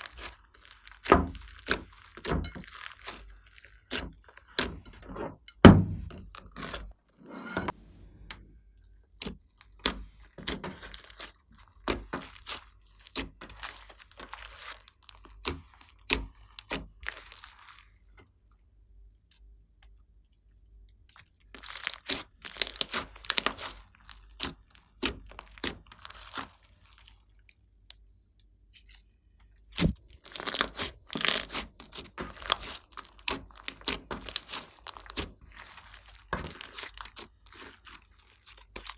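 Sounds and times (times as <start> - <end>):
slime crackling and popping: 0.0 - 4.8, 9.2 - 17.8, 21.1 - 27.4, 29.7 - 38.9.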